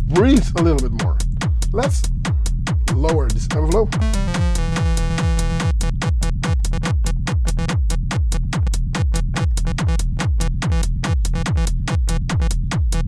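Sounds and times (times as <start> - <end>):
closed hi-hat ticking: 0.0 - 13.0
techno kick drum: 0.0 - 13.0
synth notes: 4.0 - 12.4.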